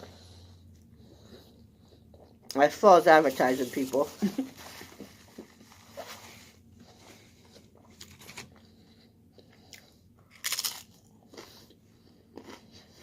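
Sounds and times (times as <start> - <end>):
person chewing: 0.7 - 2.6, 9.3 - 13.0
crunchy bite: 10.3 - 11.6.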